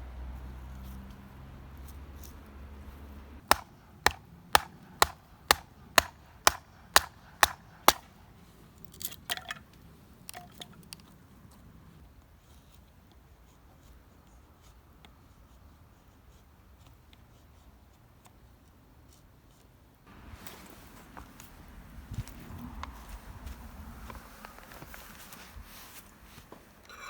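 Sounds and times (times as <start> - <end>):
sharp strikes: 3.4 - 8.2.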